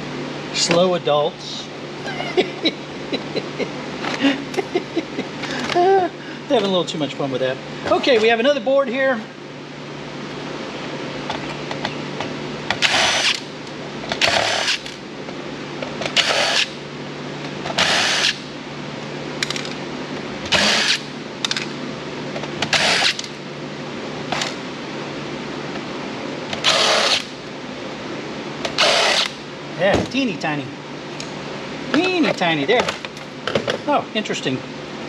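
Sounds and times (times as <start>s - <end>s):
steady low hum: 0.0s - 35.0s
power tool bursts: 12.8s - 13.5s, 14.2s - 15.0s, 16.2s - 16.8s, 17.8s - 18.4s, 20.5s - 21.1s, 22.7s - 23.3s, 26.6s - 27.3s, 28.7s - 29.4s.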